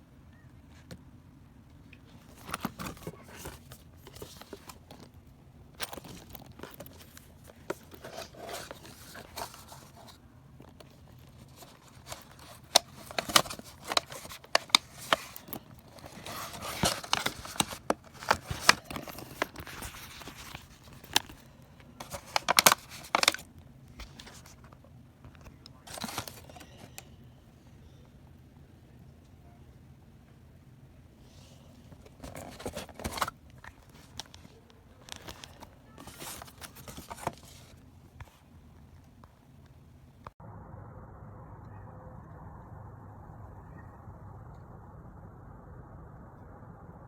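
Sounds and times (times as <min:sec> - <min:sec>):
packaging tearing and crinkling: 0:05.8 - 0:10.2, 0:10.9 - 0:24.6, 0:25.9 - 0:26.9, 0:32.2 - 0:37.7.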